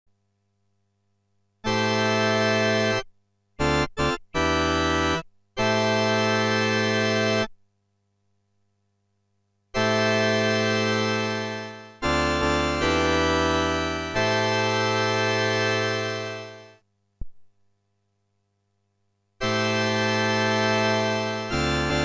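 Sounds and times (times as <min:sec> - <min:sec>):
electronic keyboard chords: 0:03.6 - 0:07.5, 0:09.8 - 0:16.7, 0:19.4 - 0:22.0.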